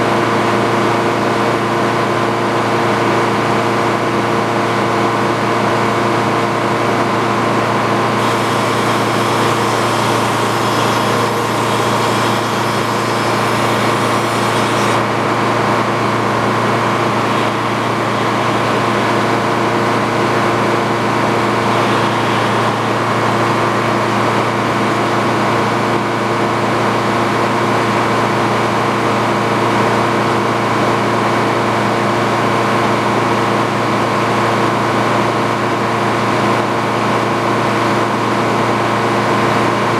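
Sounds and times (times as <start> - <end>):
saw engine running: 7.0 - 26.4.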